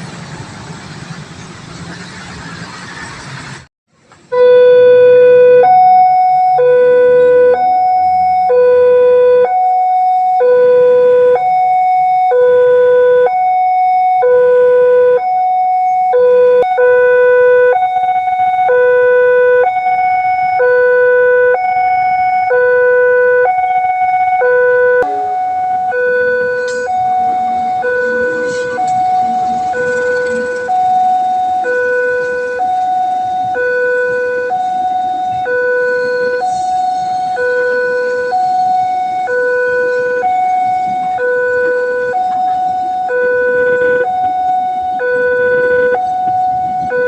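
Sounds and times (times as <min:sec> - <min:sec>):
street noise: 0:00.0 - 0:47.0
two-tone level crossing alarm: 0:04.3 - 0:47.0.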